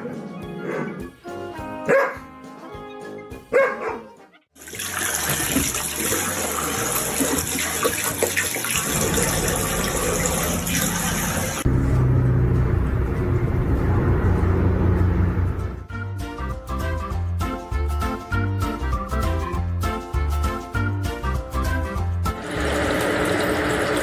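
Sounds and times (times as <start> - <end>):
running water: 4.6 - 15.8, 22.4 - 24.0
background music with bass: 11.6 - 22.4.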